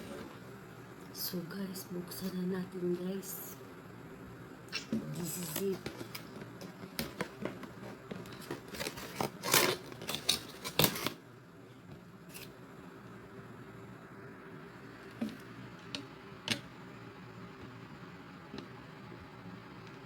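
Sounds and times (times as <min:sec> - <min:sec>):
faint room hum: 0:00.0 - 0:20.0
cardboard being cut and torn: 0:08.6 - 0:11.2.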